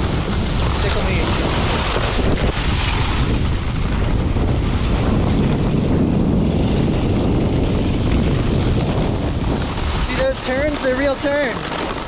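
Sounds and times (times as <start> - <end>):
snowboard sliding over snow: 0.0 - 12.0
wind buffeting microphone: 0.0 - 12.0.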